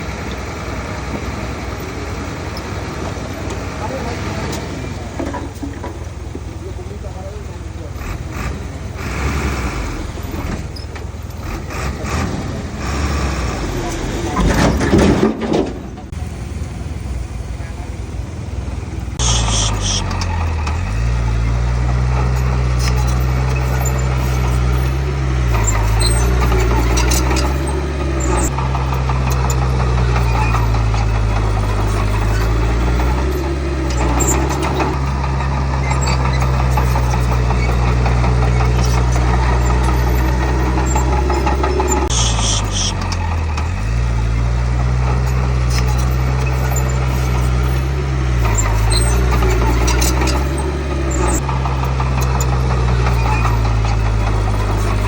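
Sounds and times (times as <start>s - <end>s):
bulldozer diesel engine running: 0.0s - 55.0s
high metallic squeaks: 19.2s - 55.0s.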